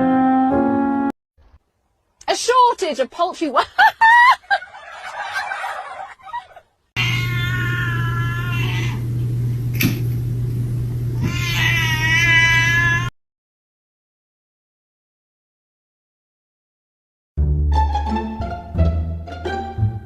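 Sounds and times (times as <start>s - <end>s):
cat meowing: 7.0s - 9.1s, 11.2s - 13.1s
steady low hum: 7.1s - 11.5s.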